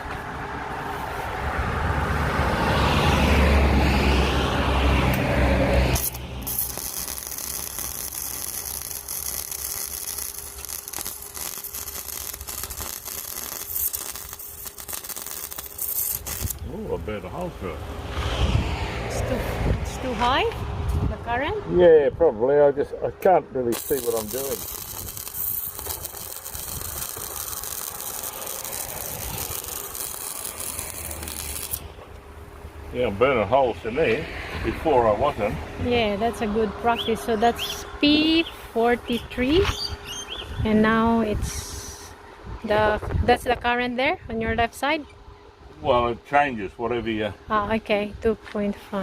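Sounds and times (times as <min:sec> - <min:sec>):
welder electrical hum: 0:03.4 - 0:21.8, 0:22.7 - 0:49.0
welding arc crackling hiss: 0:05.9 - 0:17.5, 0:23.7 - 0:32.0.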